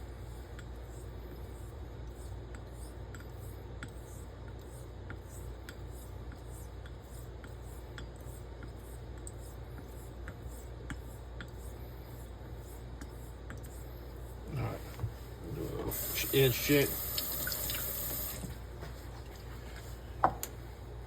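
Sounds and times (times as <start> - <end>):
low steady hum: 0.0 - 21.0.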